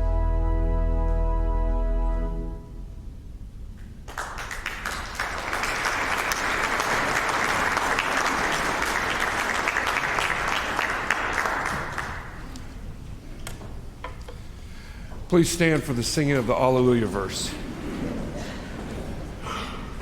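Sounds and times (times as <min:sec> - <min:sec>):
congregation applauding: 0:04.0 - 0:12.9.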